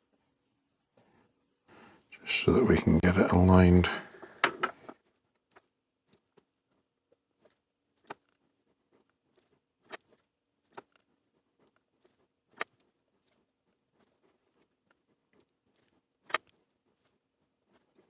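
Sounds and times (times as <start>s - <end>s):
faint steady hum: 0.0s - 5.0s.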